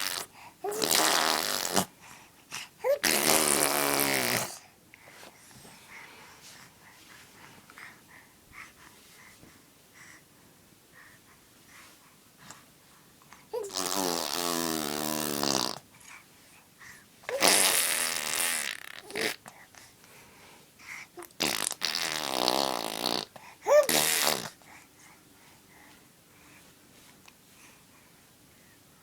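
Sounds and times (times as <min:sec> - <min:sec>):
baby blowing raspberries: 0:00.0 - 0:02.1, 0:02.8 - 0:04.6, 0:13.6 - 0:15.8, 0:17.3 - 0:19.5, 0:21.2 - 0:24.6.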